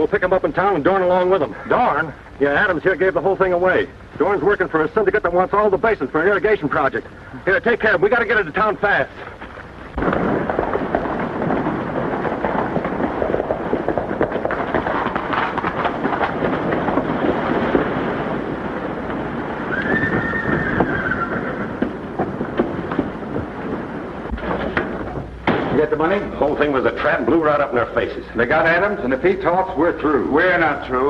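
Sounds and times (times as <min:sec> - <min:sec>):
horses galloping: 0:00.0 - 0:31.0
horse whinnying: 0:19.6 - 0:22.1.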